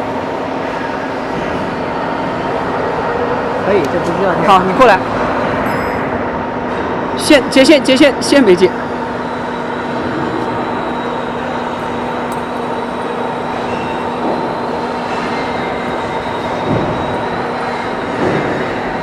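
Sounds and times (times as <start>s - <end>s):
mechanical hum and rumble: 0.0s - 19.0s.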